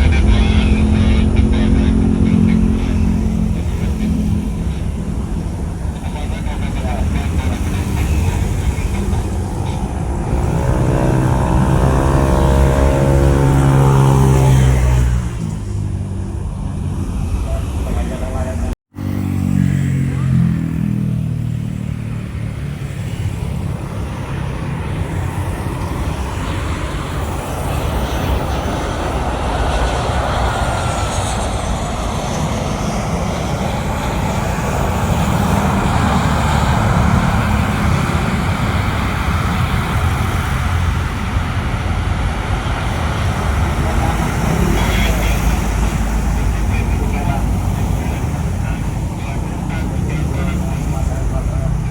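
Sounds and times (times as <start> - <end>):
jet engines roaring: 0.0 - 51.9.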